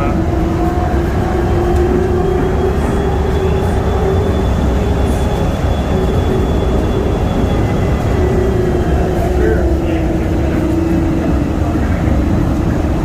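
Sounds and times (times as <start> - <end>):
train rumbling: 0.0 - 13.0.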